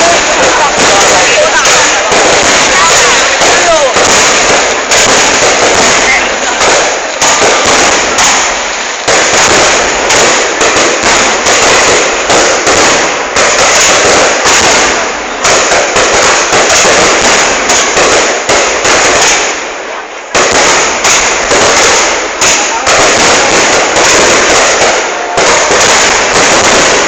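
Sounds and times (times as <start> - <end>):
fireworks bangs and crackling: 0.0 - 27.0.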